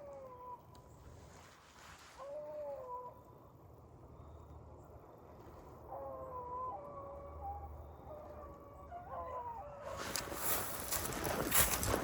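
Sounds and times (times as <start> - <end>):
footsteps through dry leaves: 9.9 - 12.0.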